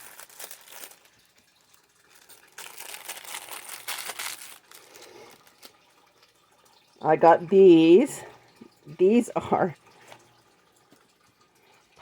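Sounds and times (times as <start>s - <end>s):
plastic packaging crinkling: 0.0s - 6.0s.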